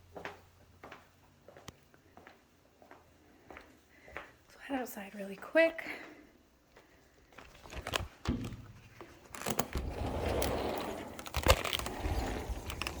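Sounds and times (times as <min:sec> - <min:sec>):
rough rolling scrape: 0:09.3 - 0:13.0.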